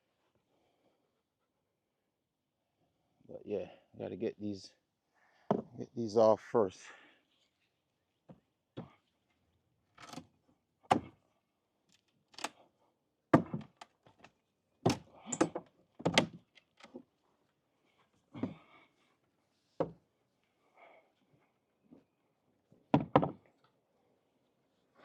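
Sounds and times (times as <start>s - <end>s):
wooden knocks and thuds: 5.5s - 5.8s, 10.9s - 11.2s, 13.3s - 13.8s, 14.8s - 17.0s, 22.9s - 23.5s.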